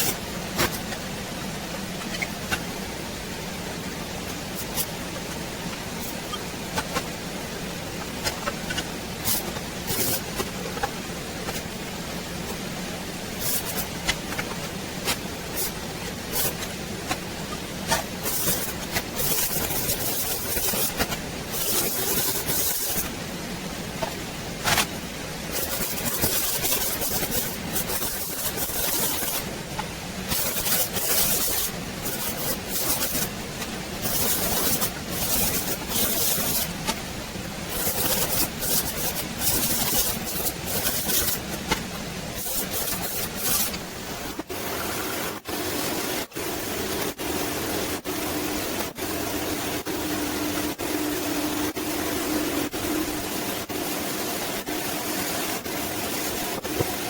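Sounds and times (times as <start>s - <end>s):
steady hum: 0.0s - 57.0s
hissing rasping workshop din: 1.8s - 44.2s.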